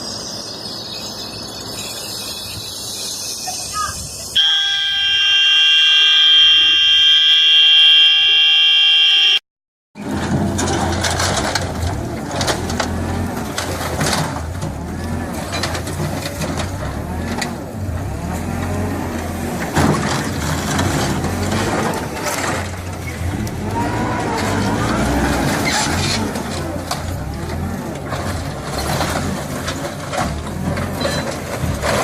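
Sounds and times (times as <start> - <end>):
loud horn-like tone: 4.4 - 9.4
knocks and clatter: 10.0 - 23.6, 24.4 - 32.0
heavy machine engine humming: 10.0 - 32.0.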